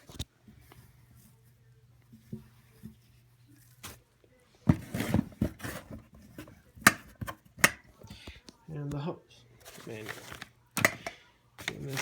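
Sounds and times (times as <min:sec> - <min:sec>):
cardboard box and paper rustling: 0:02.6 - 0:07.4, 0:09.6 - 0:10.6, 0:11.6 - 0:12.0.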